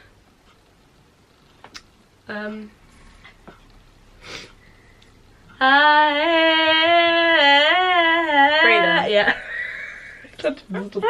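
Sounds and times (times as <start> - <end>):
woman humming: 5.6 - 9.5.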